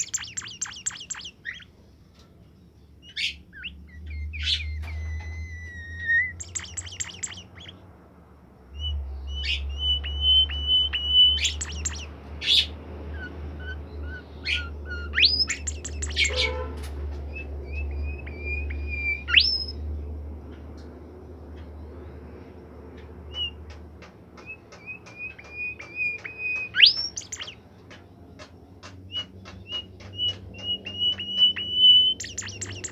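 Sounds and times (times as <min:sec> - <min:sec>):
songbird singing with trills: 0:00.0 - 0:01.7, 0:02.8 - 0:07.8, 0:08.7 - 0:16.6, 0:17.3 - 0:19.9, 0:23.3 - 0:23.7, 0:24.4 - 0:27.6, 0:28.9 - 0:32.9.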